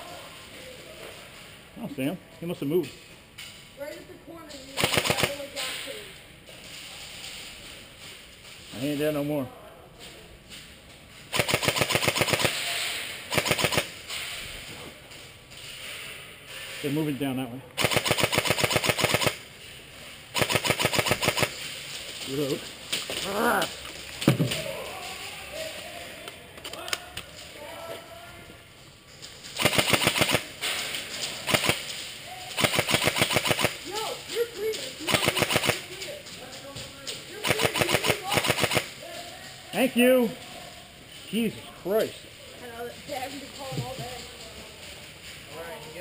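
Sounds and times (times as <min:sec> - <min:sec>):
airsoft rifle firing bursts: 0:04.8 - 0:05.5, 0:11.3 - 0:12.6, 0:13.3 - 0:14.0, 0:17.8 - 0:19.4, 0:20.3 - 0:21.6, 0:29.6 - 0:30.6, 0:31.4 - 0:31.9, 0:32.6 - 0:33.9, 0:35.1 - 0:35.9, 0:37.4 - 0:38.9.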